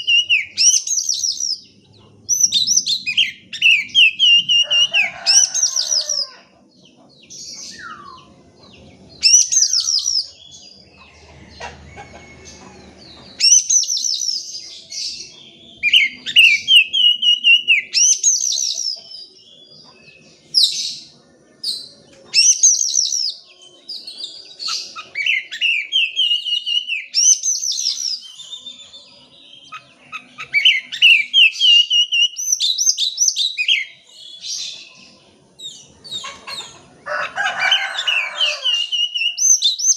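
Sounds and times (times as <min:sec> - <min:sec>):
bird singing whistled notes: 0:00.0 - 0:01.7, 0:02.3 - 0:05.5, 0:07.6 - 0:08.4, 0:09.2 - 0:10.7, 0:13.4 - 0:19.1, 0:21.7 - 0:35.0, 0:38.7 - 0:39.9.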